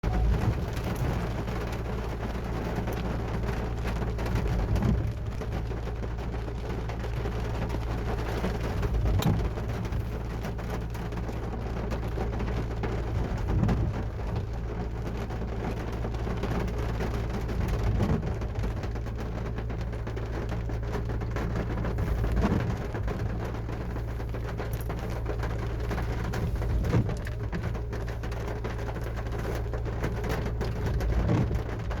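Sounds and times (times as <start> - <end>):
heavy rain on car roof: 0.0 - 32.0.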